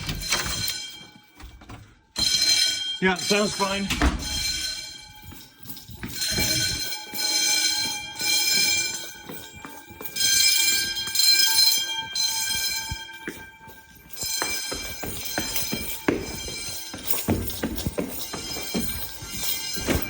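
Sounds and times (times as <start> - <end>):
fire alarm bells ringing: 0.0 - 20.0.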